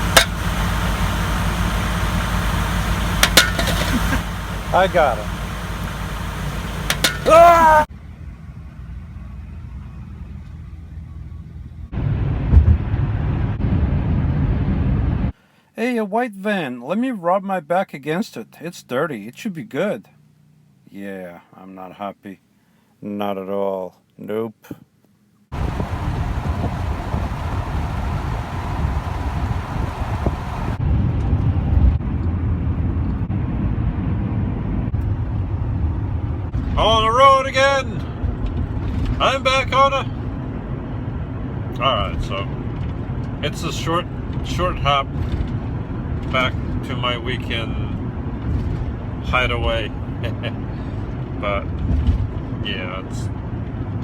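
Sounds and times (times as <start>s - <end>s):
vehicle engine rumble: 0.0s - 15.4s, 25.5s - 54.0s.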